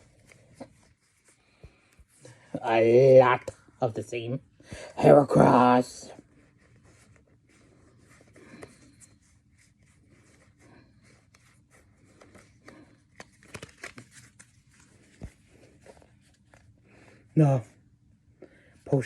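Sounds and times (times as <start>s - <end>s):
trading cards rustling and clicking: 6.5s - 17.3s.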